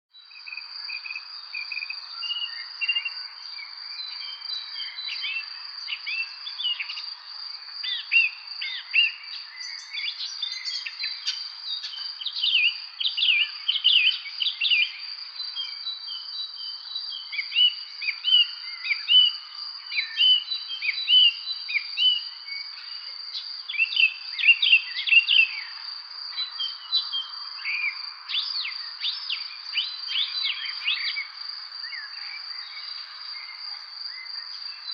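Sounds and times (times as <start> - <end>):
birds chirping: 26.4 - 34.9.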